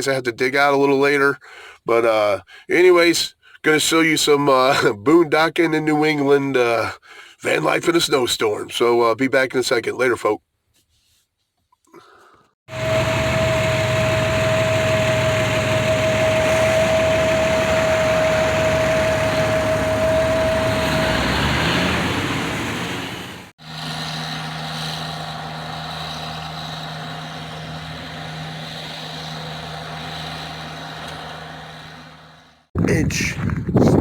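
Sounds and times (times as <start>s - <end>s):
vehicle engine running: 12.7s - 32.7s.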